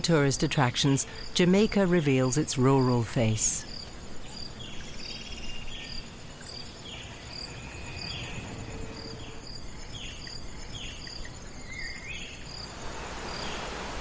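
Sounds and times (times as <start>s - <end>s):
high insect trill: 0.0s - 14.0s
short insect chirp: 3.6s - 14.0s.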